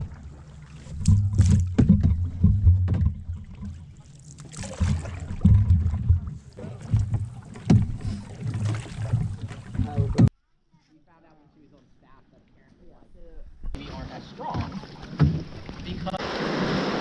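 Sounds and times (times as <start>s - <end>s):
paddles knocking against hull: 0.0s - 10.3s, 14.4s - 16.0s
water sloshing: 0.0s - 10.3s, 13.7s - 17.0s.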